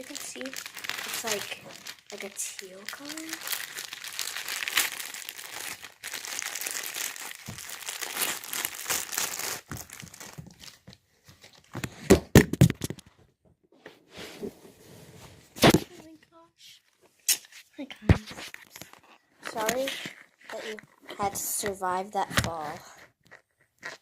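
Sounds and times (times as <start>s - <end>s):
crinkling handling noise: 0.0s - 13.2s, 13.8s - 24.0s
camera falling with thumps: 11.7s - 13.1s.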